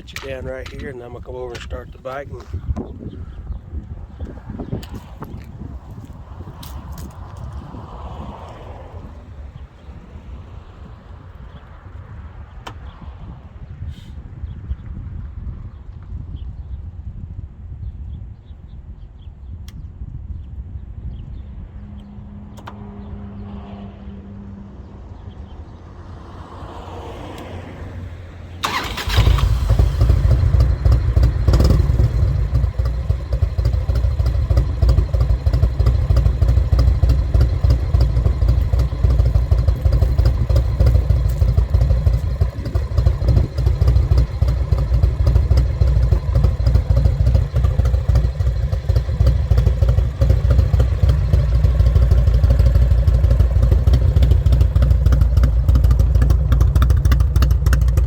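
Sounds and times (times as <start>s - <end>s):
motorcycle engine idling: 28.6s - 58.0s
motorcycle starter cranking: 28.6s - 58.0s.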